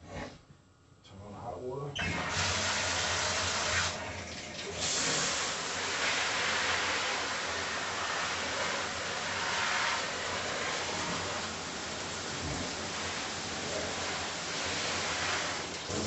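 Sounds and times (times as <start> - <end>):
water running hard: 2.0 - 16.0.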